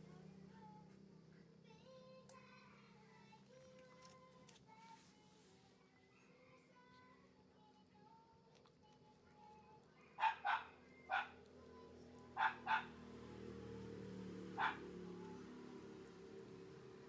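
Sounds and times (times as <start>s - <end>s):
dog barking: 10.1s - 11.4s, 12.4s - 13.0s, 14.5s - 15.4s.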